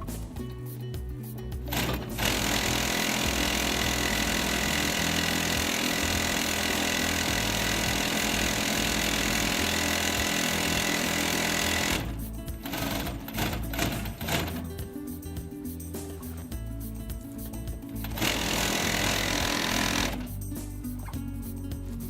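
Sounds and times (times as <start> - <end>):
sewing machine stitching: 1.7 - 14.8, 17.9 - 20.4.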